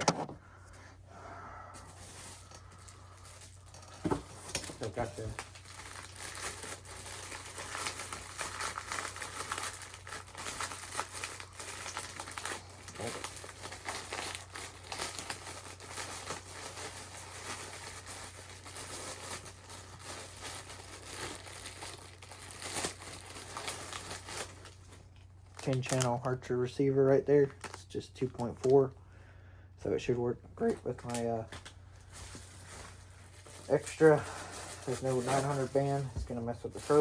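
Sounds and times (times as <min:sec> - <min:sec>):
packaging crinkling: 0:01.8 - 0:26.4, 0:27.4 - 0:28.9, 0:30.6 - 0:37.0.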